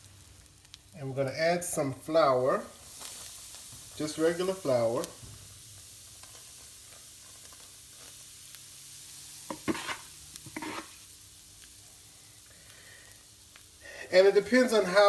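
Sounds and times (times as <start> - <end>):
oil sizzling in a skillet: 0.0 - 15.0
stirring utensil scraping: 9.5 - 11.0.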